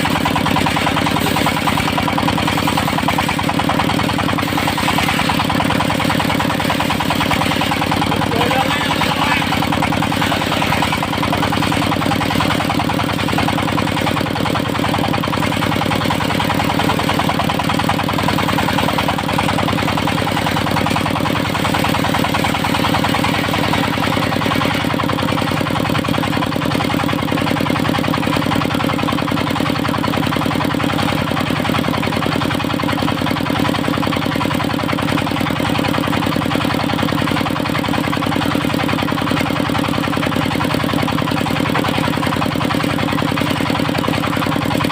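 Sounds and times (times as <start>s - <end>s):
sawmill engine running: 0.0s - 44.9s.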